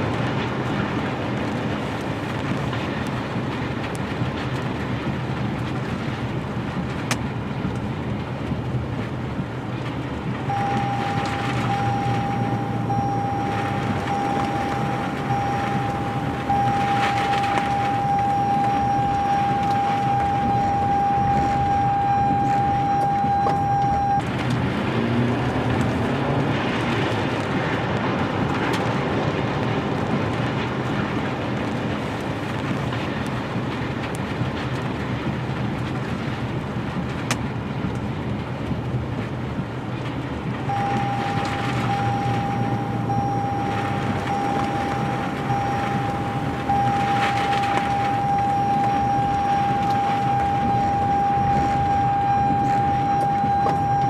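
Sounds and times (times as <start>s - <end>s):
roaring tornado wind: 0.0s - 54.0s
rising whine: 10.4s - 26.9s, 40.6s - 54.0s
high-pitched tone: 10.5s - 24.2s, 40.7s - 54.0s.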